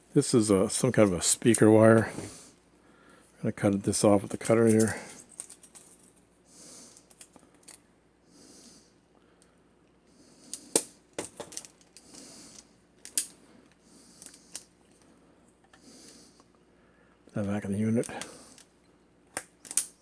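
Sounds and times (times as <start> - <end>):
wire stripper clicks and rustles: 10.5 - 15.8, 17.3 - 20.0
wire cutter snaps: 19.3 - 20.0.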